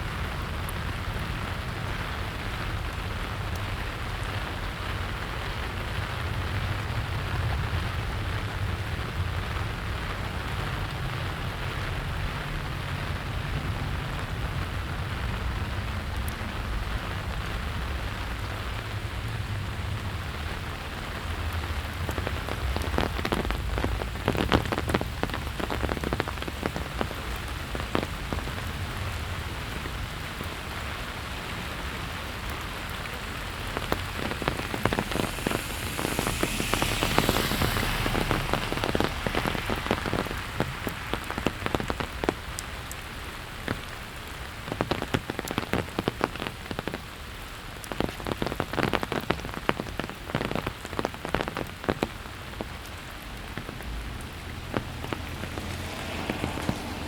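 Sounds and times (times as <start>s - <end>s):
raindrops ticking on hard surfaces: 0.0s - 57.0s
steady rain falling: 0.0s - 57.0s
broad hiss: 32.8s - 42.1s.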